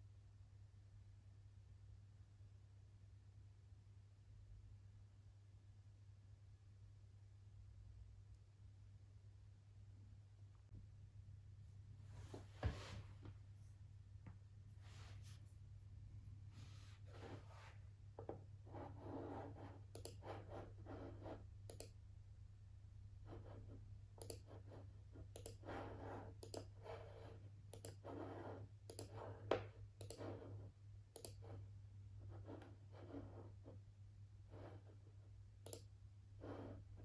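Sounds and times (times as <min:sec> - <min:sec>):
stylus scratching on screen: 0:18.6 - 0:21.9, 0:23.2 - 0:33.8, 0:34.5 - 0:35.8, 0:36.4 - 0:37.0
computer mouse clicks: 0:19.9 - 0:20.5, 0:21.7 - 0:22.0, 0:24.2 - 0:24.6, 0:25.2 - 0:25.7, 0:26.3 - 0:26.8, 0:27.7 - 0:28.1, 0:28.9 - 0:30.4, 0:31.1 - 0:31.5, 0:35.6 - 0:35.9.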